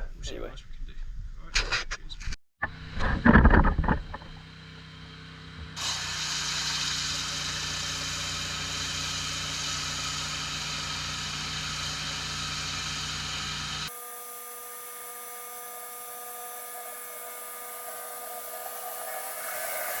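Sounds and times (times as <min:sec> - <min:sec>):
pressure washer humming: 0:04.4 - 0:20.0
high-pressure water spray hiss: 0:05.8 - 0:20.0.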